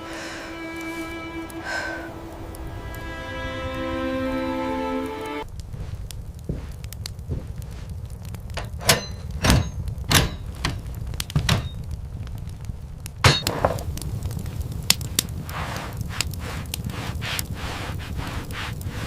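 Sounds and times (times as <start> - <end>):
steady low rumble: 0.0 - 19.0
sharp knocks and thuds: 8.5 - 11.8.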